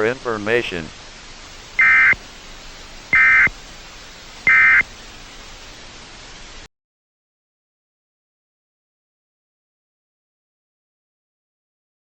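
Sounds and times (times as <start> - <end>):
steady hiss: 0.0 - 6.7
high-pitched digital buzzes: 1.6 - 2.2, 3.1 - 3.6, 4.4 - 5.0.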